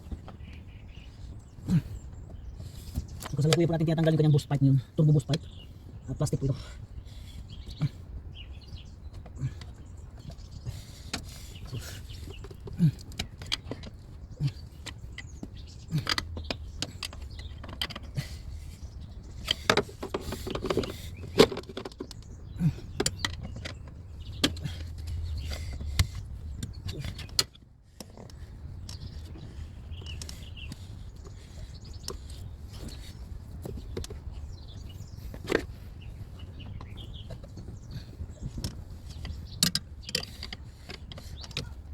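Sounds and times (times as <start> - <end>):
hand tools clicking and rattling: 9.1 - 41.9.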